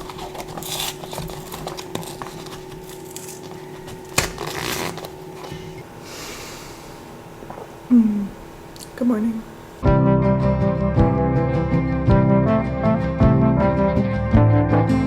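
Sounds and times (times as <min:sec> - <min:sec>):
faint steady hum: 0:00.0 - 0:09.8.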